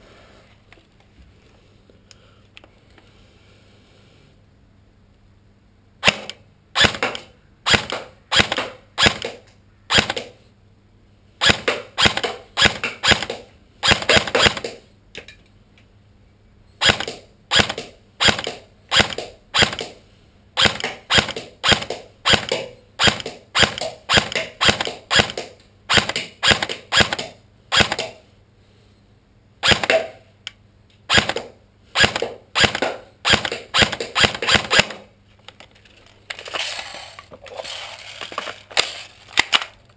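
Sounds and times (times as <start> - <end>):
airsoft gun single shots: 6.0 - 10.3, 11.4 - 14.8, 29.6 - 30.2.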